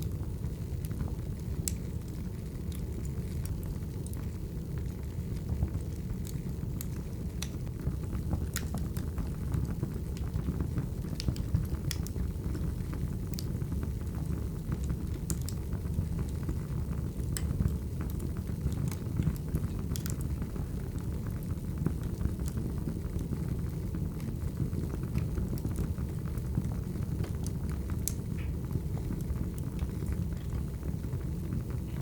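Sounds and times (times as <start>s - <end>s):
fire crackling and popping: 0.0s - 32.0s
low rumble of flames: 0.0s - 32.0s.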